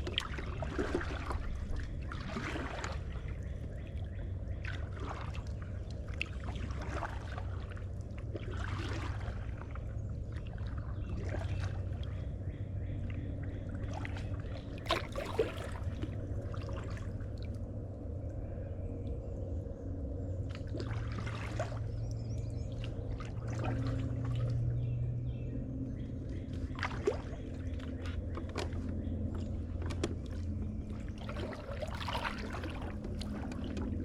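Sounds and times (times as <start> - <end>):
water trickling off paddle: 0.0 - 4.0, 4.6 - 12.2, 13.6 - 17.7, 26.4 - 34.0
paddle swishing through water: 0.0 - 12.4, 13.2 - 17.8, 20.4 - 24.9, 26.1 - 34.0.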